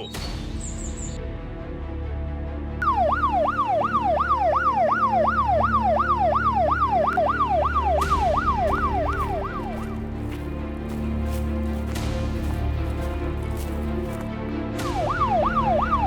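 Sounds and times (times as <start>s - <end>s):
fast wailing siren: 2.8s - 9.8s, 14.8s - 16.0s.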